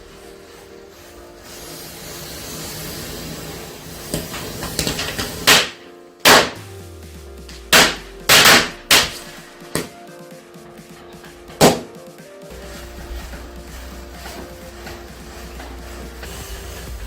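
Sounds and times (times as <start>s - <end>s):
firecrackers banging: 0.0s - 10.0s
background music: 0.0s - 17.0s.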